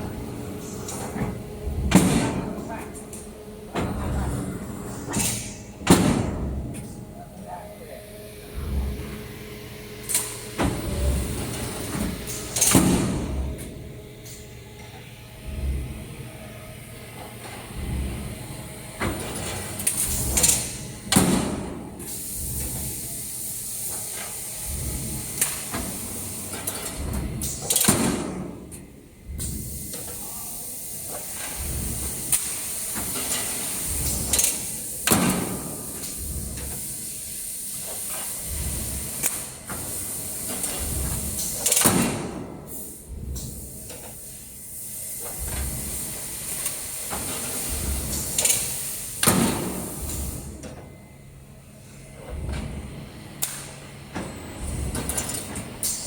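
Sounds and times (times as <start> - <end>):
machine hiss and pulsing hum: 0.0 - 56.0
machine clunk and rush: 17.2 - 22.9, 23.9 - 28.6, 45.2 - 50.8, 52.1 - 56.0.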